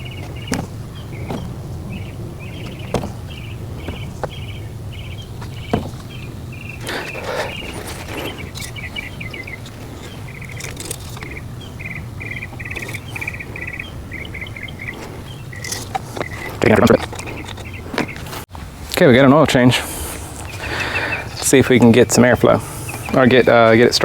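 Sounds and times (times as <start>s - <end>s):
insects chirping in trills: 0.0s - 18.4s, 20.0s - 24.0s
handling clicks and scrape: 0.0s - 18.5s, 20.2s - 24.0s
steady low hum: 0.0s - 19.0s.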